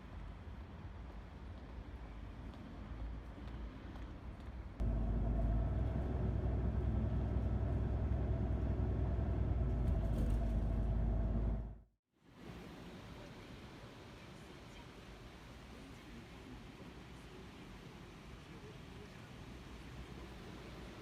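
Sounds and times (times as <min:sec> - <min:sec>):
car engine and road noise: 0:04.8 - 0:11.9.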